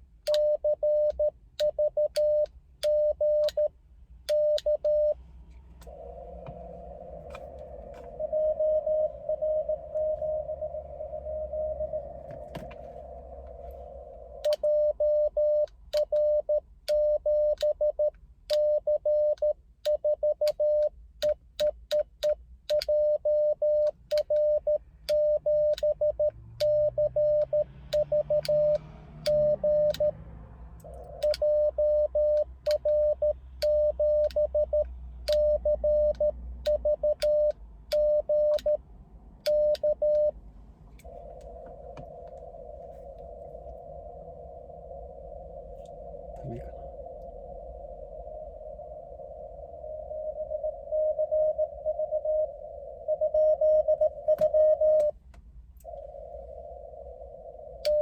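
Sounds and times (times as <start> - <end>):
morse code tone: 0.3 - 3.7, 4.3 - 5.2, 6.0 - 20.9, 22.7 - 30.2, 30.9 - 38.8, 39.4 - 40.4, 47.8 - 55.1
radio receiver hiss: 5.2 - 14.9, 40.4 - 50.9, 55.6 - 58.0
keying clicks: 30.8 - 31.5.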